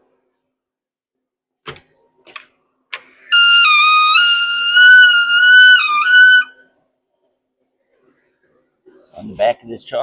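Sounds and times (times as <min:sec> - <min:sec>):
high trumpet-like horn: 0:03.2 - 0:06.6.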